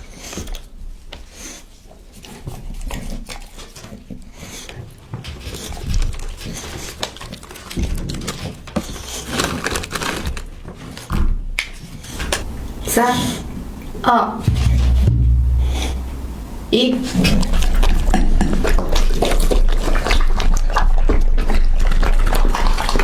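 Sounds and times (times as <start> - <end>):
dog chewing raw meat: 0.0 - 9.3, 17.2 - 23.0.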